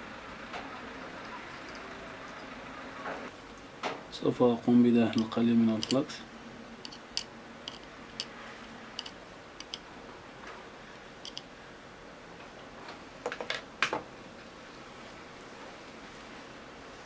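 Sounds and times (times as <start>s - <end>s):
small tools tapping circuit board: 5.1s - 6.2s, 6.9s - 8.4s, 9.0s - 9.8s, 11.2s - 11.5s.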